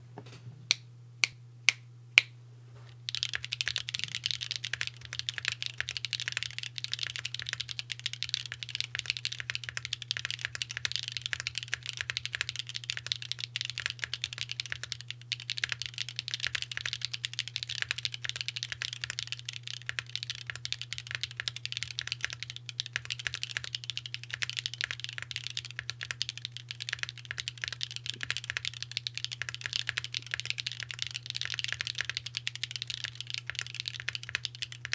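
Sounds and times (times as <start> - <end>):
faint low hum: 0.0 - 34.9
mechanical keyboard typing: 3.1 - 34.9.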